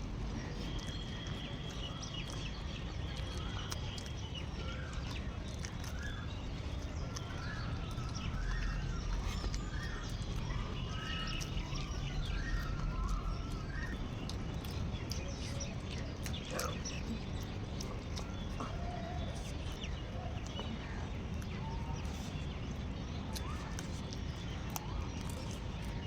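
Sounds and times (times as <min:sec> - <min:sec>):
birds chirping: 0:00.0 - 0:26.0
people chewing and eating: 0:00.0 - 0:26.0
mouth and food clicks: 0:00.4 - 0:22.6, 0:23.3 - 0:26.0.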